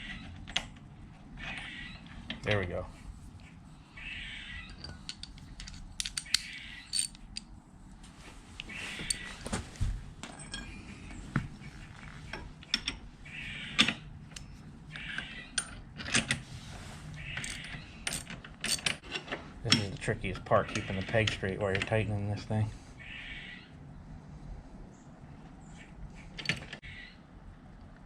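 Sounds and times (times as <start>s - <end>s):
metal clinks of tool: 4.7s - 7.2s.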